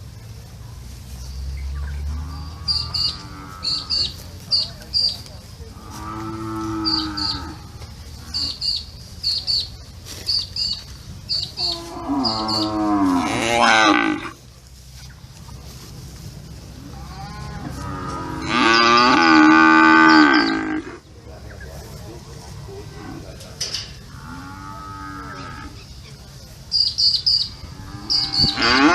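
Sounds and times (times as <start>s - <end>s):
cattle mooing: 5.8s - 8.5s, 11.6s - 14.4s, 16.9s - 21.0s, 27.6s - 28.9s.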